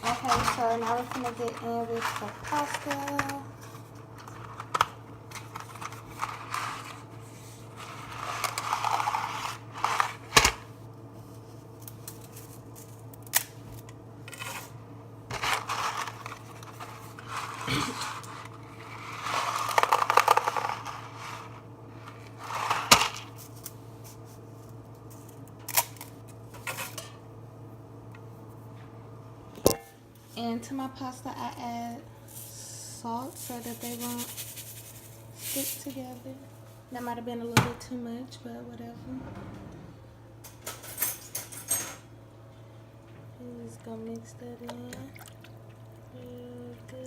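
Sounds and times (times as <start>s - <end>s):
dry pasta crackling and rustling: 15.3s - 25.8s, 33.2s - 36.3s.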